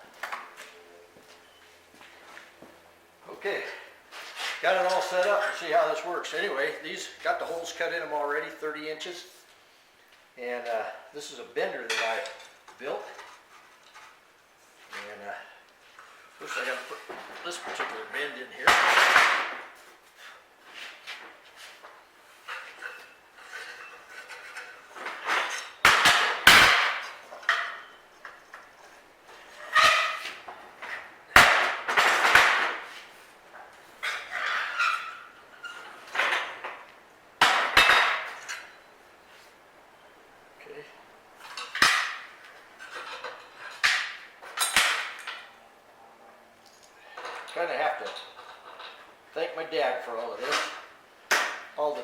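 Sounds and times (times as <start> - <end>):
steel bar clanking and scraping: 22.4 - 28.0.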